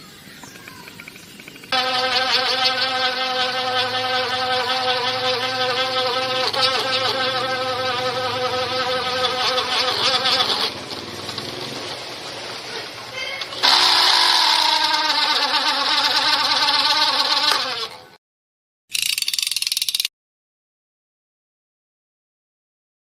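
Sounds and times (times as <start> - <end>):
electric fan wavering buzz: 0.0 - 18.2.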